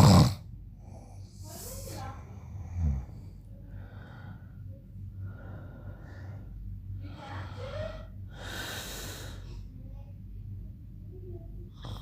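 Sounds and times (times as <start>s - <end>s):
man snoring loudly: 0.0s - 0.4s
man breathing heavily: 2.6s - 9.7s.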